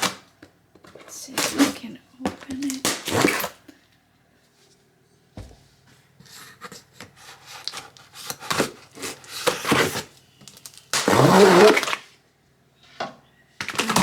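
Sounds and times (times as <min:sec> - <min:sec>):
cardboard and tape scraping and tearing: 0:02.8 - 0:03.6, 0:07.2 - 0:10.1, 0:10.9 - 0:12.1.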